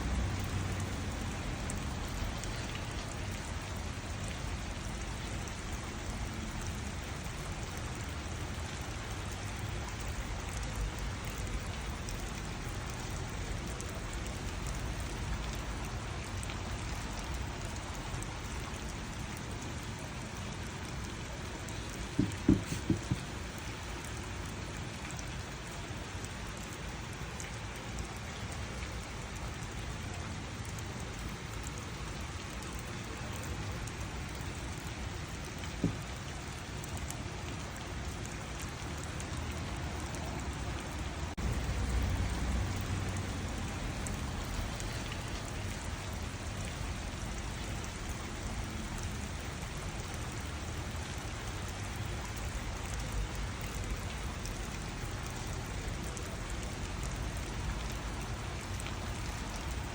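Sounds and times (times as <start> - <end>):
gentle rain pattering: 0.0 - 59.9.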